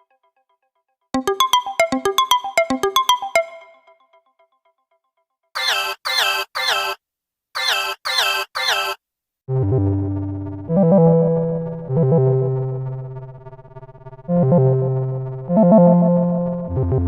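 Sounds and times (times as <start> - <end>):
synthesizer alarm chords: 1.2 - 4.0.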